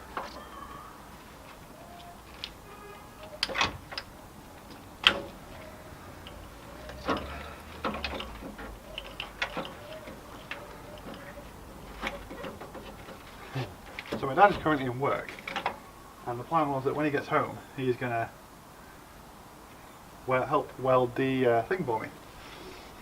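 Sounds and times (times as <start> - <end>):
hand tools clicking on metal parts: 3.2 - 15.8.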